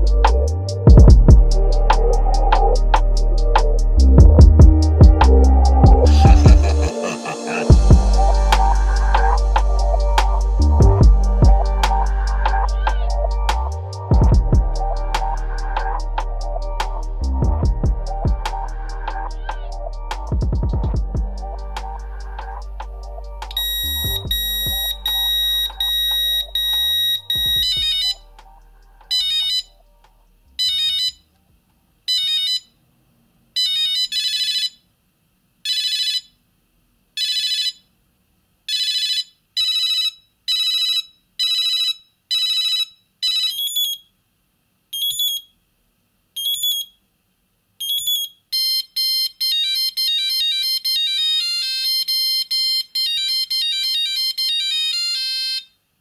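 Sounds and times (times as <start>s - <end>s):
mobile phone ringtones beeping: 23.5s - 28.2s, 29.1s - 29.7s, 47.8s - 55.7s.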